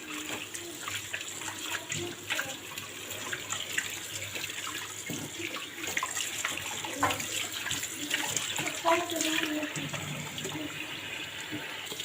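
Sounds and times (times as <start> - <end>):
tap running into sink: 3.8 - 10.6.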